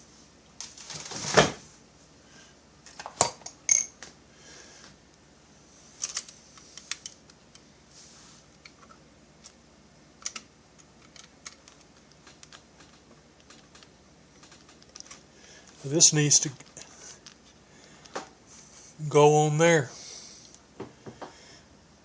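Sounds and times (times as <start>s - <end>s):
metal tools clinking on workbench: 3.1s - 4.0s.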